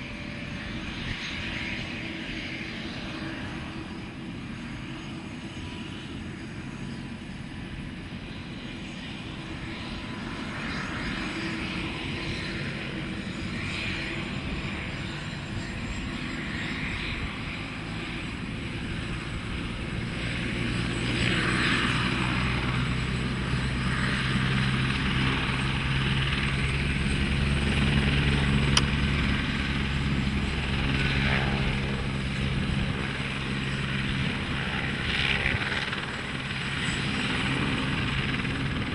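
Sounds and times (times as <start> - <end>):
helicopter engine and rotor: 0.0 - 38.9.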